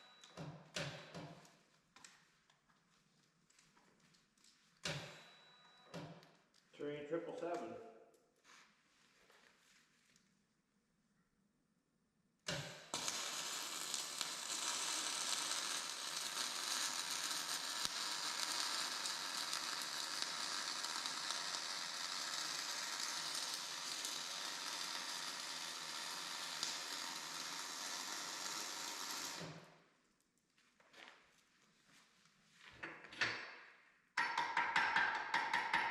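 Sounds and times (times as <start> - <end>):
electric welding arc crackling: 12.5 - 29.7.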